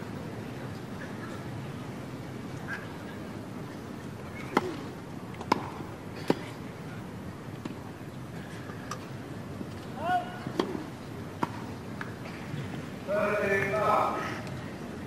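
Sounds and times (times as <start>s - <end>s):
background hubbub: 0.0s - 15.0s
tennis ball pops: 4.5s - 6.4s.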